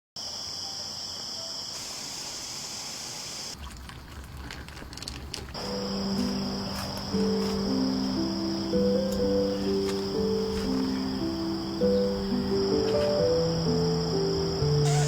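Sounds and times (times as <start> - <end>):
insects chirring: 0.2 - 3.6, 5.5 - 15.0
soft background music: 5.6 - 15.0.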